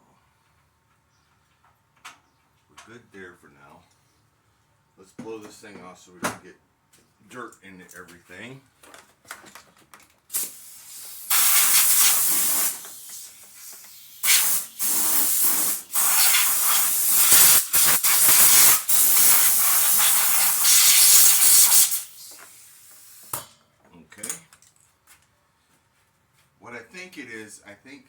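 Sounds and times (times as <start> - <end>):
compressed air blow gun hissing: 10.3 - 23.4.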